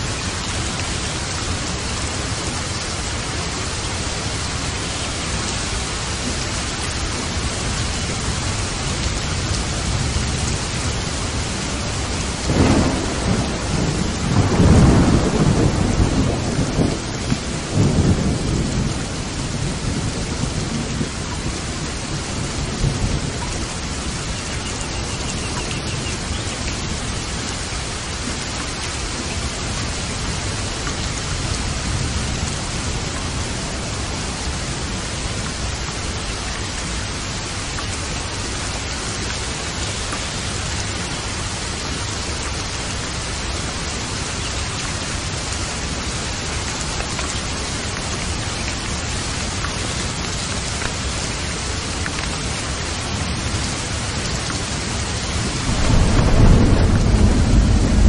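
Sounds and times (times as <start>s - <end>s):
steady rain: 0.0s - 58.0s
thunder rumbling: 9.2s - 24.1s, 54.8s - 58.0s.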